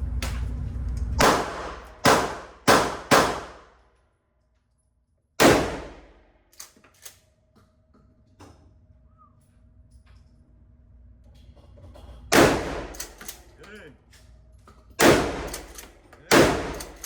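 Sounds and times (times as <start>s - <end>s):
gunshots with ringing tail: 1.2s - 3.7s, 5.4s - 6.2s, 12.3s - 13.0s, 15.0s - 15.7s, 16.3s - 17.0s.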